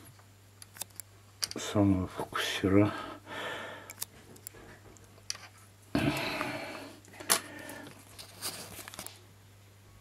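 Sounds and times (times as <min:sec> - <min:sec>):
steady low hum: 0:00.0 - 0:10.0
sharp clicks of small parts: 0:00.6 - 0:01.6, 0:03.8 - 0:05.5.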